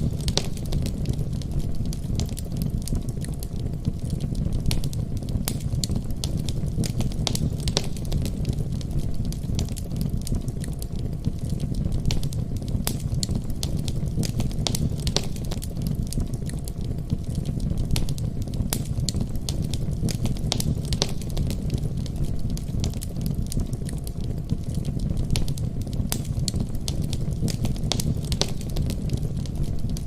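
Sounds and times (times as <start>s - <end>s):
fire crackles and pops: 0.0s - 30.0s
low rumble of flames: 0.0s - 30.0s.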